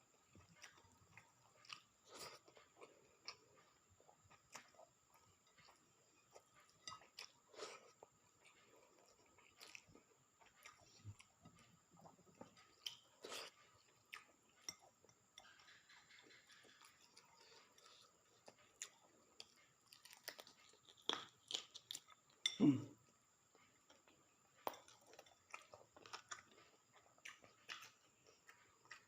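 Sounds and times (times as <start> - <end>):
person chewing food: 0.0 - 29.0.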